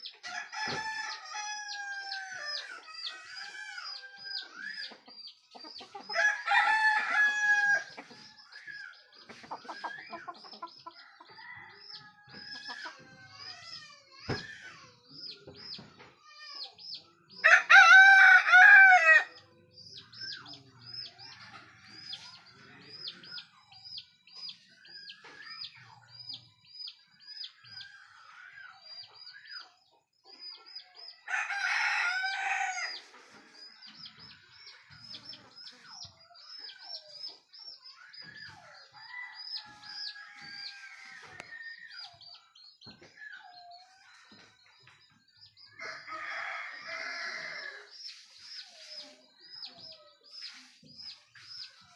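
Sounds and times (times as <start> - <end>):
bird chirping: 0.0 - 17.4, 19.2 - 31.4
rooster crowing: 6.2 - 7.9, 17.4 - 19.4, 31.2 - 33.0, 45.8 - 47.9.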